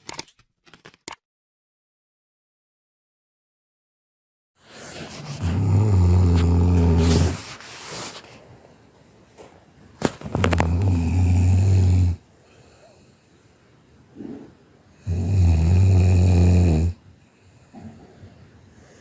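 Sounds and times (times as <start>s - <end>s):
low buzzing snores: 5.3s - 7.4s, 10.4s - 12.3s, 14.1s - 17.0s.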